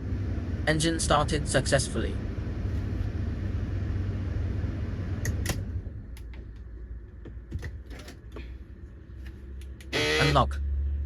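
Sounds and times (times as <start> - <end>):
car engine idling: 0.0 - 10.4.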